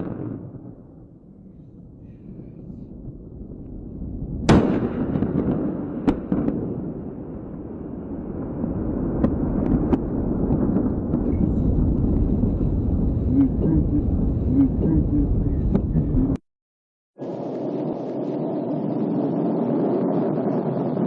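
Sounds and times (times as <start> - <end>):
rocket explosion blast: 0.0 - 14.5
low rumble: 6.7 - 16.4.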